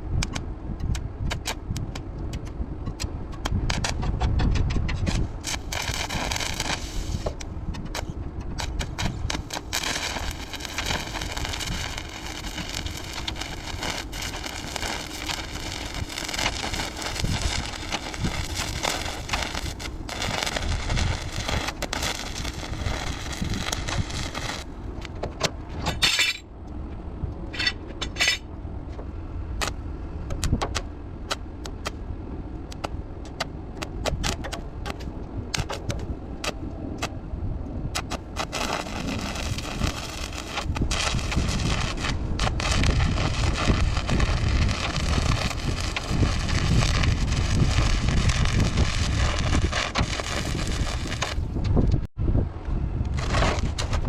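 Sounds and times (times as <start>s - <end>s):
welding arc crackling: 5.1s - 25.2s, 32.7s - 35.0s, 35.6s - 37.1s, 37.9s - 51.5s, 53.1s - 54.0s.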